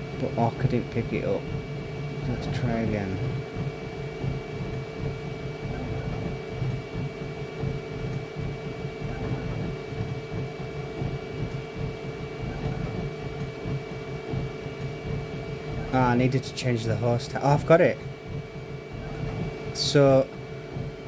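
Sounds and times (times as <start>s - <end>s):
print head rumbling: 0.0s - 21.0s
printer fan hum with high whine: 0.0s - 21.0s.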